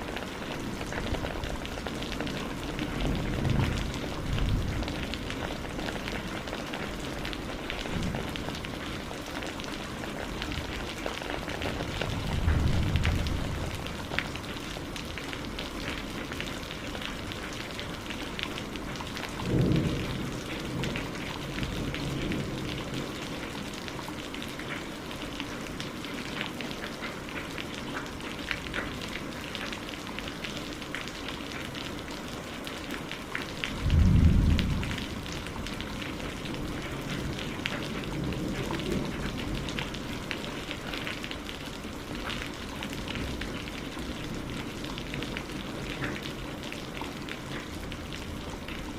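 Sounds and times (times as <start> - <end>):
rain pattering: 0.0 - 48.9
thunder rolling: 12.0 - 14.1, 33.8 - 37.4.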